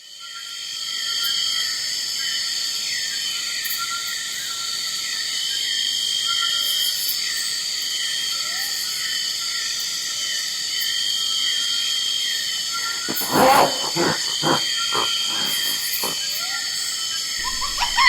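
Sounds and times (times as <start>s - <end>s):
insect chirping: 12.8s - 16.3s, 17.4s - 18.0s
insects trilling: 12.8s - 16.4s, 17.4s - 18.0s.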